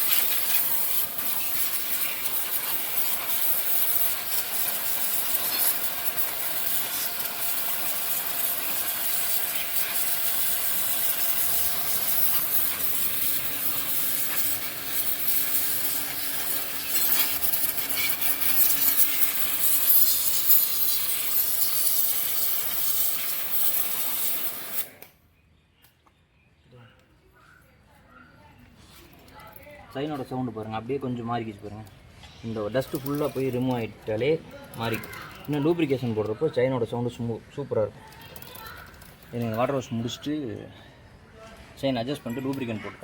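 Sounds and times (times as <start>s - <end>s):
drive chain rasping over sprockets: 0.0s - 25.1s, 32.6s - 36.4s, 38.0s - 39.9s.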